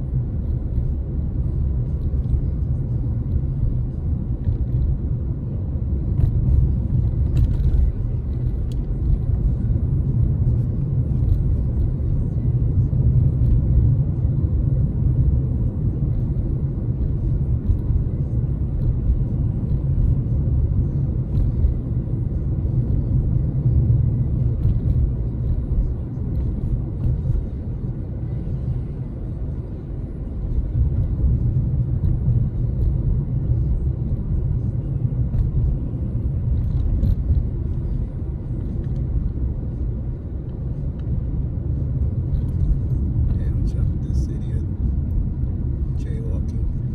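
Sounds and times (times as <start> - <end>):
road and engine noise in car cabin: 0.0 - 46.9.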